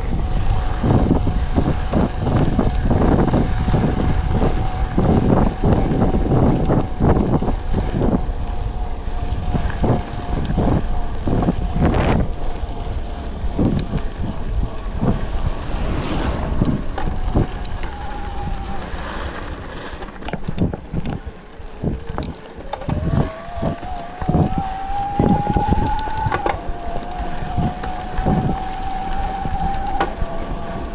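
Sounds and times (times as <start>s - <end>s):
bike rattling over bumps: 0.0s - 30.9s
wind buffeting microphone: 0.0s - 30.9s
electric motor whine: 21.1s - 30.9s.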